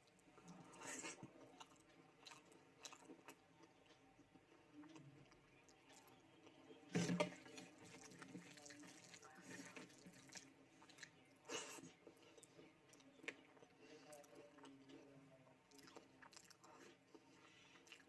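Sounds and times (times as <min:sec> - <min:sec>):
wet chewing and mouth sounds: 0:00.0 - 0:18.0.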